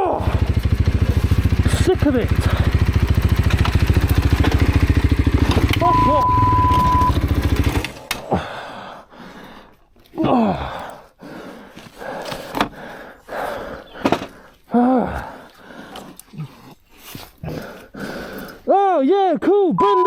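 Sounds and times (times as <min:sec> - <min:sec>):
man grunting and groaning: 0:00.0 - 0:02.8, 0:08.1 - 0:08.7, 0:10.1 - 0:11.1, 0:14.7 - 0:15.5, 0:16.2 - 0:17.9.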